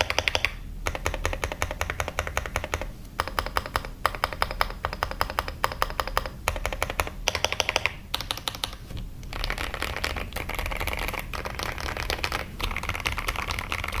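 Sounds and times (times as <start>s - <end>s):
mechanical keyboard typing: 0.0s - 14.0s.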